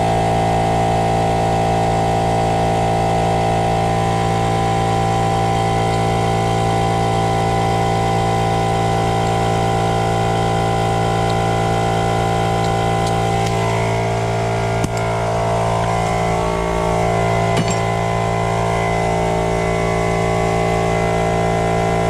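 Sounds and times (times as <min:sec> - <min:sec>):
air compressor running: 0:00.0 - 0:22.0.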